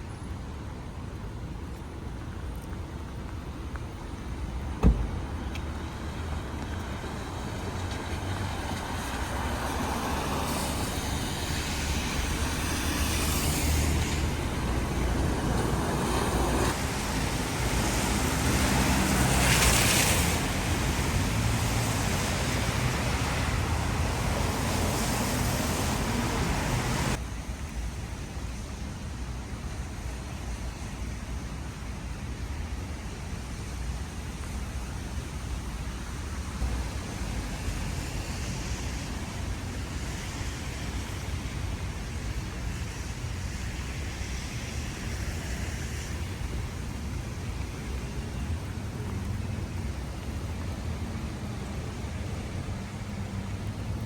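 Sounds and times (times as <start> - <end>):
tyres hissing on wet road: 0.1 - 54.0
low engine hum: 2.8 - 27.2
sharp knock: 4.8 - 5.2.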